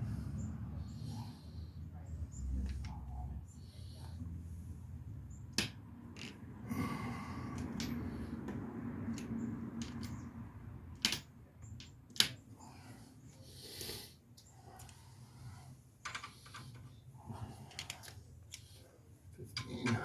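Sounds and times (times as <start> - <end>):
hand tools and metal parts clinking: 7.5 - 8.3, 9.1 - 10.3.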